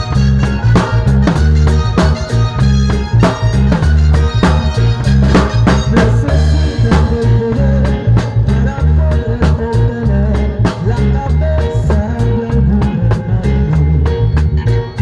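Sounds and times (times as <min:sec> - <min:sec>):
music with drum beat and heavy bass: 0:00.0 - 0:15.0.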